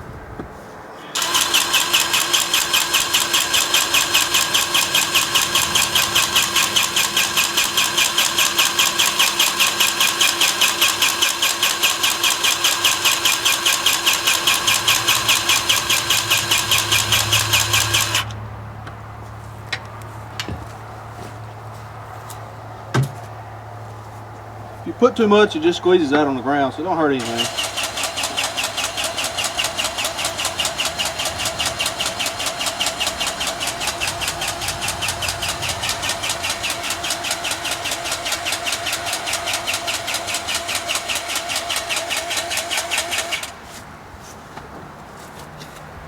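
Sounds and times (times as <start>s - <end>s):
grease gun pump pulsing: 1.2s - 18.4s, 27.2s - 43.6s.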